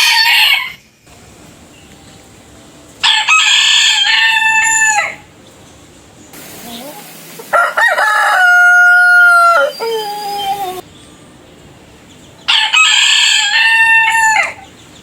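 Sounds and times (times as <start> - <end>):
rooster crowing: 0.0 - 0.8, 3.0 - 5.3, 6.8 - 10.8, 12.4 - 14.7.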